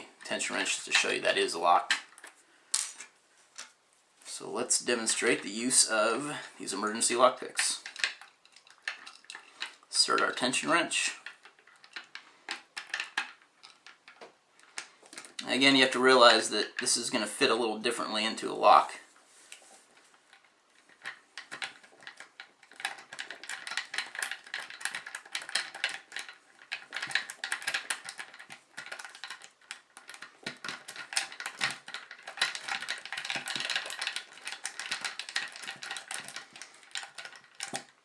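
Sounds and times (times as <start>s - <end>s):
wire scraping and clicking in lock: 19.5s - 38.0s.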